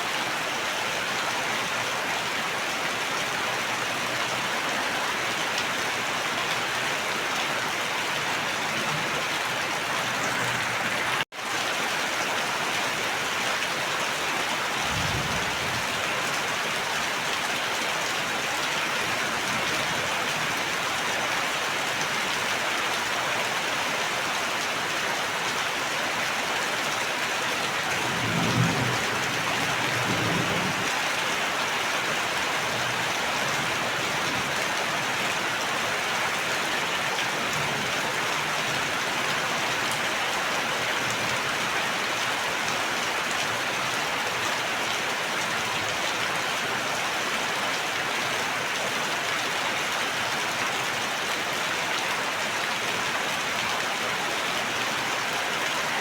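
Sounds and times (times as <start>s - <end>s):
steady rainfall: 0.0s - 56.0s
low thunder rumbles: 14.6s - 16.4s.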